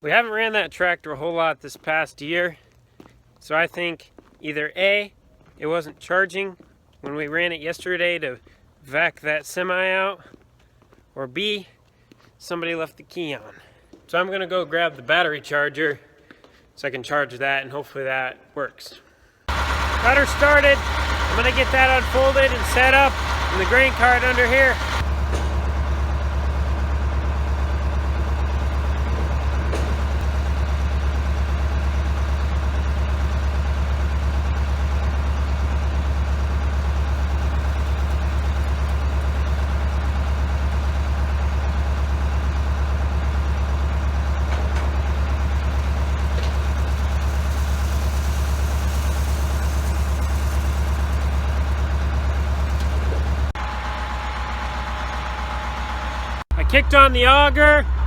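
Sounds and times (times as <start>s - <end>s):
tractor engine idling: 19.5s - 58.0s.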